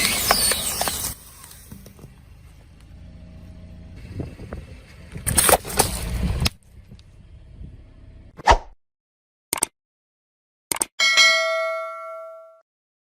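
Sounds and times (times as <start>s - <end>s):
car engine and tyres rumbling: 0.0s - 8.4s.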